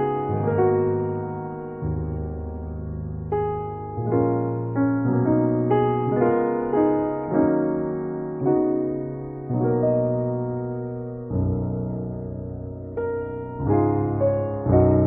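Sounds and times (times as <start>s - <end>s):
slow soft piano music: 0.0s - 15.0s.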